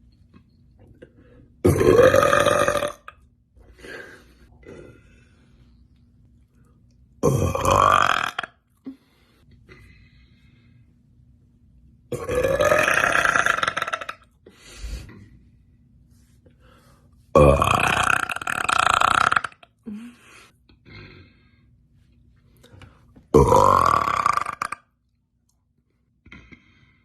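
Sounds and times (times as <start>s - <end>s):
woman belching loudly: 1.6s - 3.1s, 7.2s - 8.5s, 12.1s - 14.2s, 17.4s - 19.6s, 23.4s - 24.8s.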